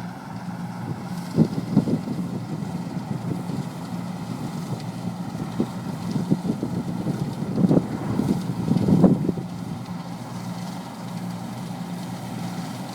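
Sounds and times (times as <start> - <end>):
combine harvester humming: 0.0 - 12.9
wind buffeting microphone: 0.8 - 10.7.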